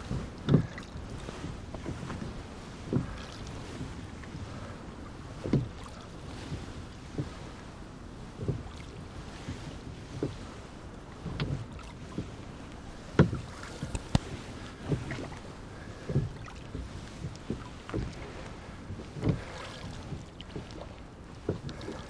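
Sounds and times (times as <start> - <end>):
oars knocking and splashing: 0.0 - 7.6, 8.3 - 22.0
faint wind noise: 0.0 - 22.0
sharp clicks: 13.9 - 14.3.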